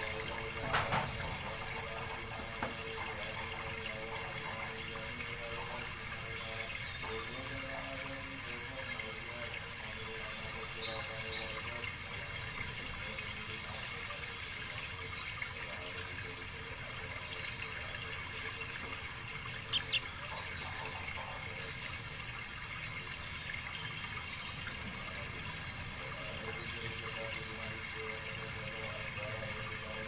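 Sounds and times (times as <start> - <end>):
songbird chirping: 0.0 - 22.2.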